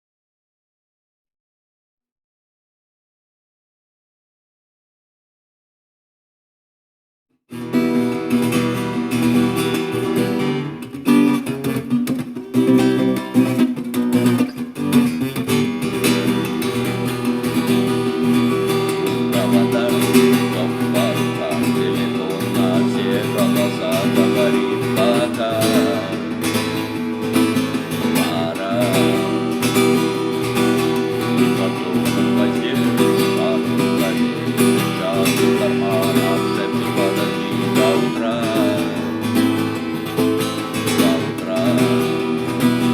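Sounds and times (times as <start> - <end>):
acoustic guitar music: 7.5 - 42.9
person singing: 16.1 - 42.9.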